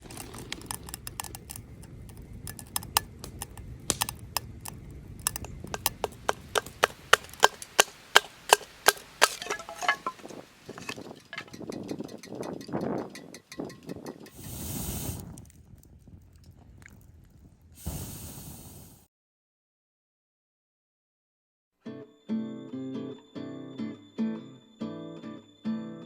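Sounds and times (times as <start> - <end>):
sharp knocks: 5.3 - 11.6.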